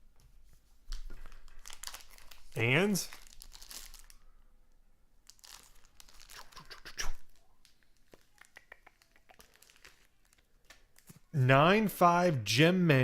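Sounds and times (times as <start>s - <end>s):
plastic packaging crinkling and tearing: 0.9s - 4.3s, 5.2s - 11.2s.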